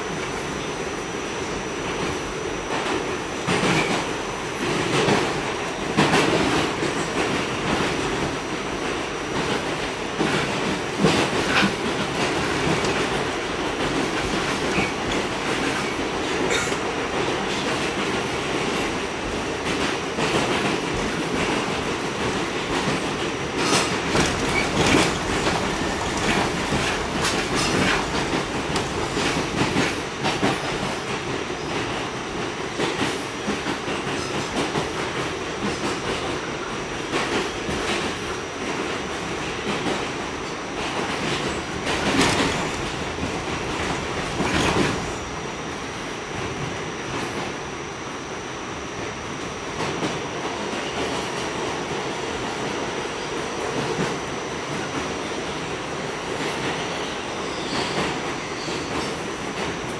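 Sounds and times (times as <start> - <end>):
subway car ride rumble: 0.0 - 59.9
wheels clicking over rail joints: 22.7 - 30.6.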